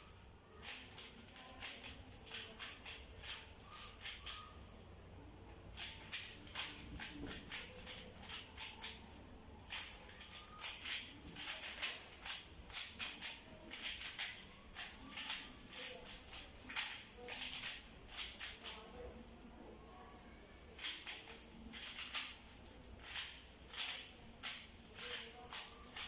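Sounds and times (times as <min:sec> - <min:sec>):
puzzle cube layers clicking: 0:09.7 - 0:18.8, 0:20.8 - 0:26.0.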